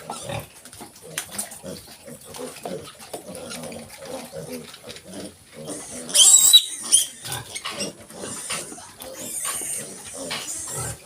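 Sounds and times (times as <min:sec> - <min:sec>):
pig grunts: 0:00.0 - 0:11.0
piglets squealing: 0:05.7 - 0:11.0.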